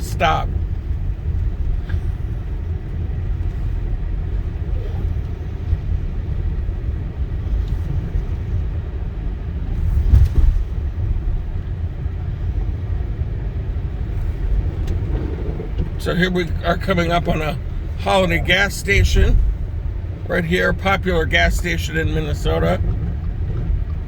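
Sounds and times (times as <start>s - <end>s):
car interior rumble: 0.0s - 24.0s
car jolt: 9.7s - 11.4s.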